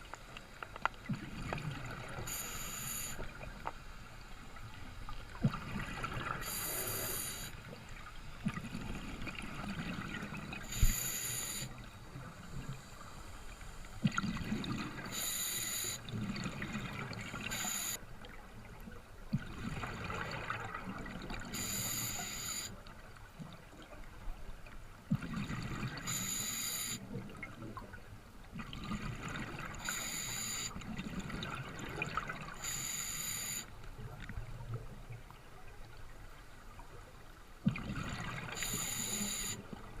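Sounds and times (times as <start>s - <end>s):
water sloshing and lapping: 0.0s - 2.6s, 3.2s - 26.4s, 27.0s - 32.9s, 33.6s - 40.0s
wind: 0.0s - 19.5s.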